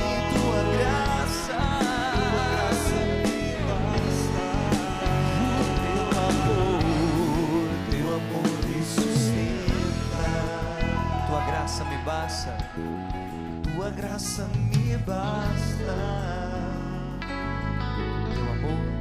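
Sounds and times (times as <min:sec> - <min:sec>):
person singing: 0:00.0 - 0:17.5, 0:18.1 - 0:19.0
worship band music with guitars: 0:00.0 - 0:19.0.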